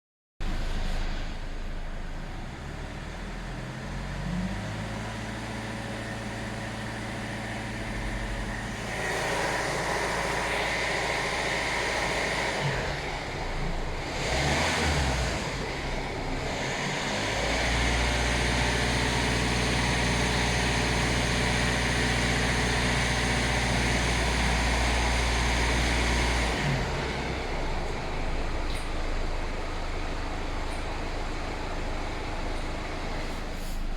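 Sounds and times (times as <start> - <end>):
diesel engine running: 0.4 - 33.9
hiss over engine: 33.2 - 33.9.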